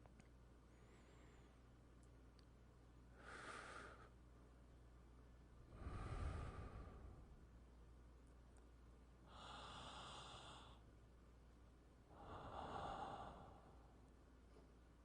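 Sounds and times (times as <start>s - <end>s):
person breathing slowly: 0.7s - 1.7s, 3.1s - 4.2s, 5.7s - 7.4s, 9.3s - 10.9s, 12.1s - 14.7s.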